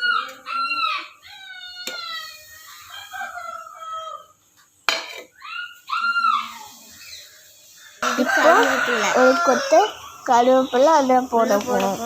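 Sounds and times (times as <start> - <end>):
rooster crowing: 0.0 - 4.4, 8.0 - 11.1.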